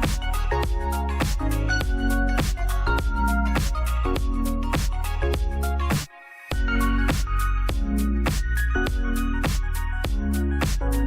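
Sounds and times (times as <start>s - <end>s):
electronic music with heavy bass: 0.0s - 11.0s.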